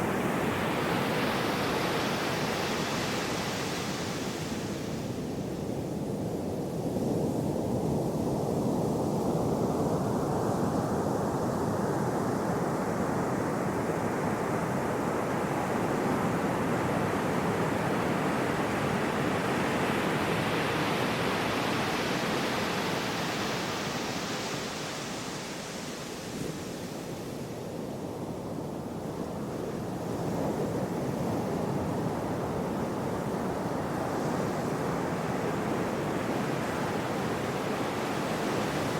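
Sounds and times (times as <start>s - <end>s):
sea waves washing onto shore: 29.0s - 38.9s.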